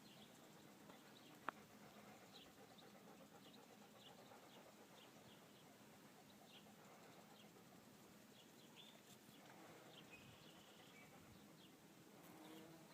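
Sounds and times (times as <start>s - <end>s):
faint bird chirps: 0.0s - 12.9s
low background hiss: 0.0s - 12.9s.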